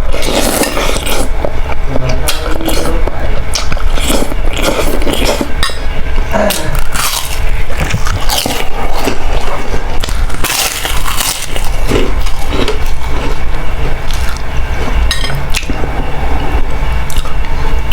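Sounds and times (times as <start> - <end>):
crackers crunching and chewed: 6.4 - 15.8.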